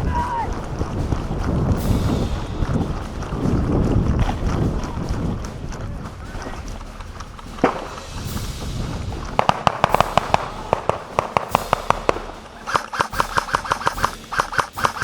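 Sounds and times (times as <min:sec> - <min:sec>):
airsoft guns firing: 0:07.5 - 0:08.1, 0:09.4 - 0:15.0.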